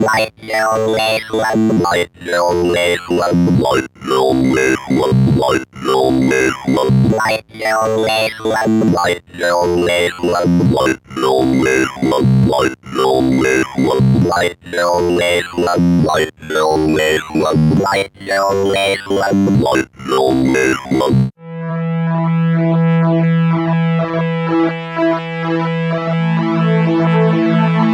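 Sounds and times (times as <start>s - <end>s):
synthesizer sequenced phrase: 0.0s - 21.3s.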